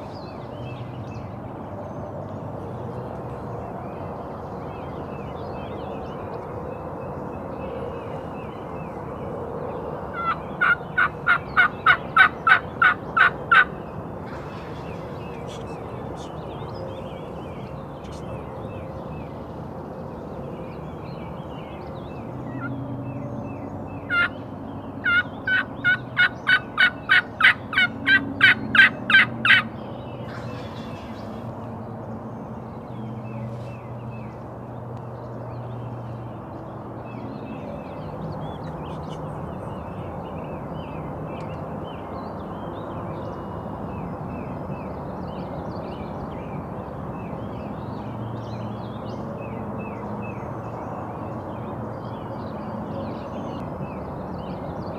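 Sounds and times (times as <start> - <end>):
faint songbird chirping: 0.0 - 54.9
wild turkey yelping: 10.2 - 13.7, 24.1 - 24.3, 25.0 - 29.6.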